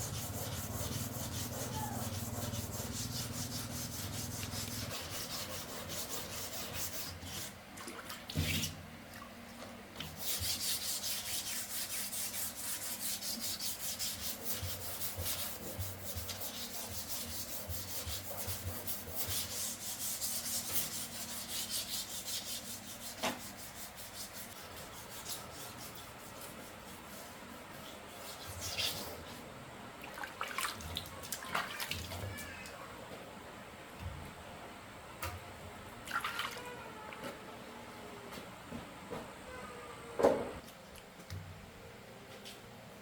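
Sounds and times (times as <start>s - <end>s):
abrasive rubbing on rusty metal: 0.0s - 7.5s.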